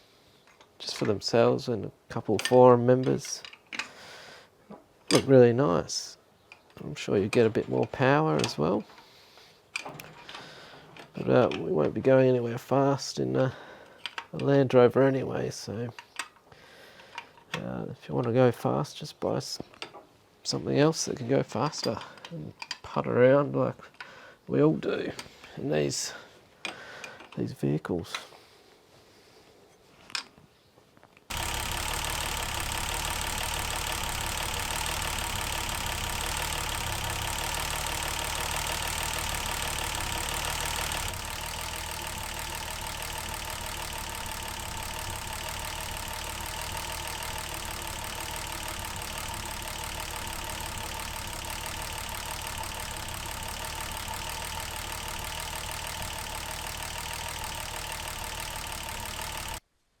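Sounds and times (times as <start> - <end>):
engine running with clatter: 31.3 - 59.6.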